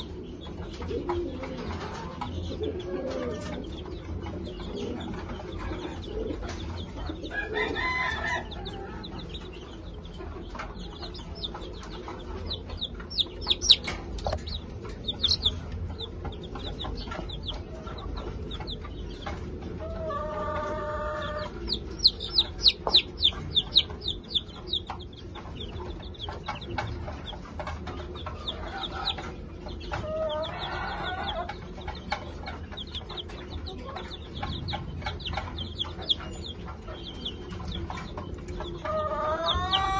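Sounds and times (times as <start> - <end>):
baby chicks peeping: 0.0 - 39.9
chickens clucking: 0.0 - 39.9
chicken drawn-out calls: 7.2 - 9.2, 19.7 - 24.8, 28.4 - 32.1, 38.7 - 39.9.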